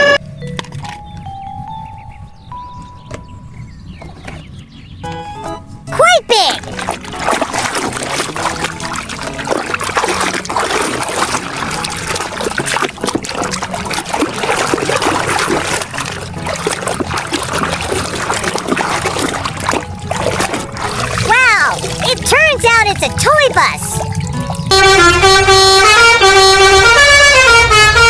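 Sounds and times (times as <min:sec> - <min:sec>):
water splashing and trickling: 0:00.1 - 0:27.7
water dripping: 0:06.0 - 0:25.0.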